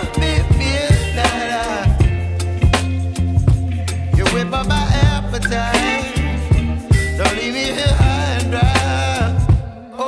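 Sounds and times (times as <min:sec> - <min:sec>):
person singing over beats: 0:04.2 - 0:09.8.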